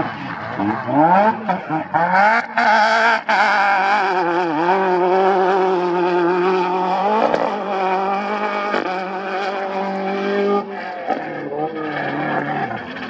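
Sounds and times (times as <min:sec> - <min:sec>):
race engine revving: 0:00.0 - 0:13.0.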